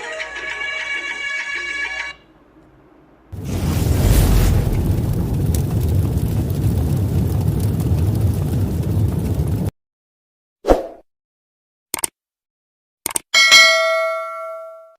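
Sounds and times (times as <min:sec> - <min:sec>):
deep rushing rumble: 0:03.3 - 0:09.7.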